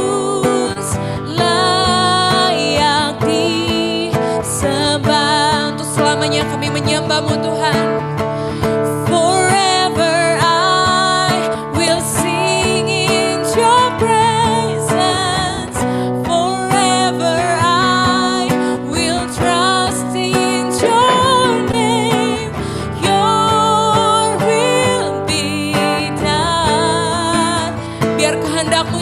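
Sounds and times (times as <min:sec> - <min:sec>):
person singing: 0:00.0 - 0:08.0, 0:09.0 - 0:29.0
worship band music: 0:20.6 - 0:23.2
sustained instrumental chords: 0:20.8 - 0:22.5.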